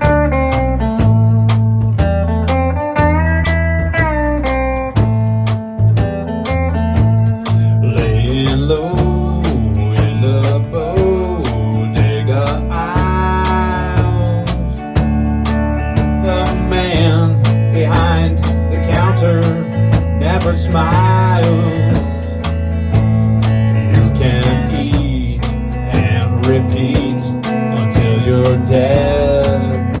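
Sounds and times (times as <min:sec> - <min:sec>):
bass line: 0:00.0 - 0:30.0
drum beat: 0:00.0 - 0:30.0
lead guitar melody with bends: 0:00.0 - 0:30.0.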